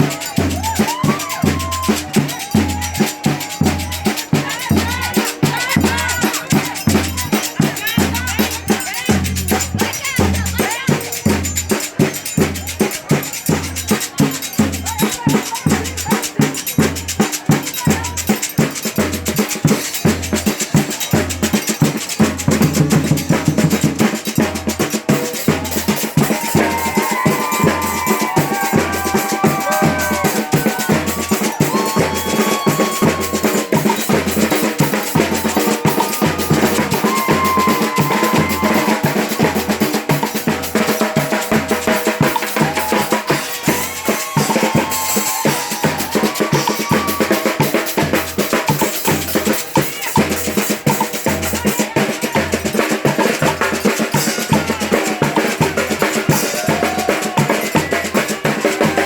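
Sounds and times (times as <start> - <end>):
snare drums: 0.0 - 59.0
bass drums beating: 25.4 - 40.8.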